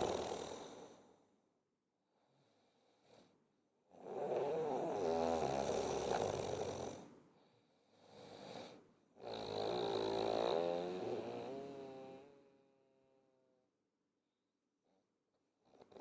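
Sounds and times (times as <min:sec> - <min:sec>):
person snoring: 0:00.0 - 0:01.1, 0:03.9 - 0:07.1, 0:08.0 - 0:12.4
soft breath: 0:02.1 - 0:03.5, 0:07.0 - 0:08.9.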